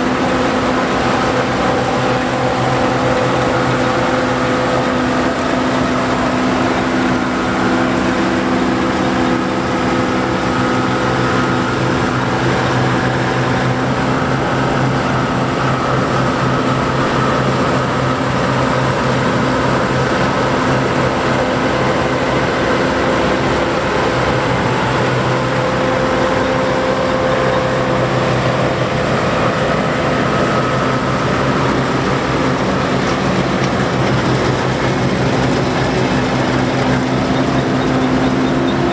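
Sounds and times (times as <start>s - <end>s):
combine harvester drone: 0.0s - 38.9s
machinery whine: 0.0s - 38.9s.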